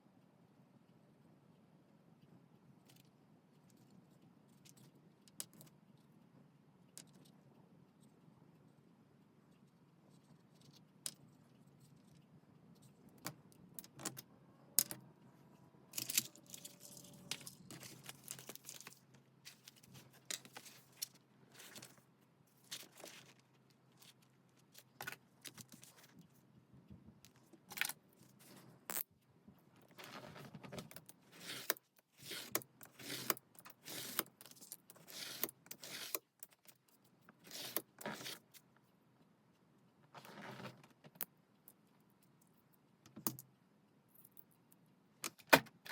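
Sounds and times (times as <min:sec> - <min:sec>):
paper rustling: 0:16.0 - 0:26.2.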